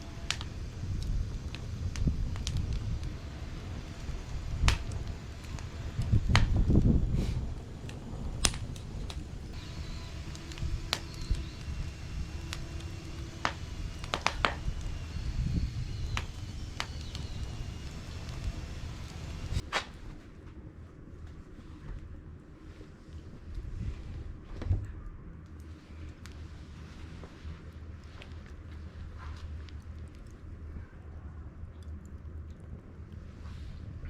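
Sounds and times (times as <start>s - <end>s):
low rumble: 0.0s - 19.6s
sharp pops of fire: 0.0s - 20.2s
wood fire crackling: 0.0s - 34.0s.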